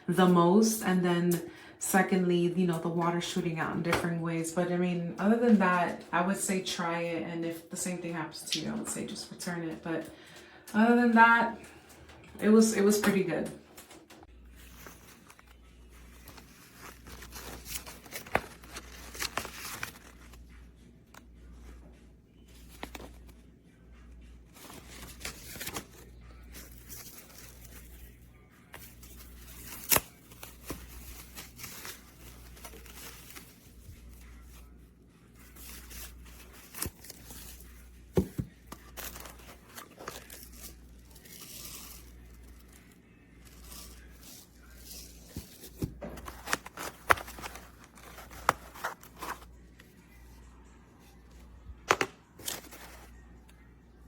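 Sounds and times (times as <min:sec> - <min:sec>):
rustling and crinkling: 0:13.6 - 0:23.4, 0:24.0 - 0:53.7.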